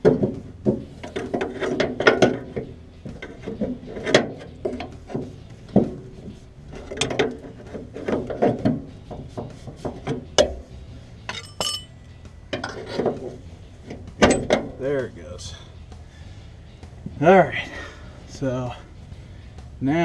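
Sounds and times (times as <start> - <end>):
steel parts knocking and scraping: 0.0 - 15.2
metallic ring: 11.2 - 12.0.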